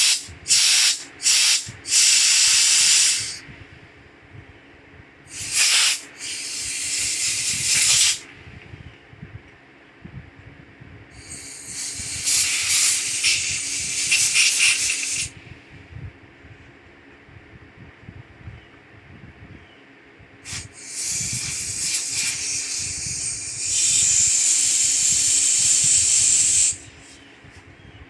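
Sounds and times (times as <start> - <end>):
pressurised spray hissing: 0.0 - 3.4, 5.3 - 8.2, 11.2 - 15.3, 20.4 - 27.2.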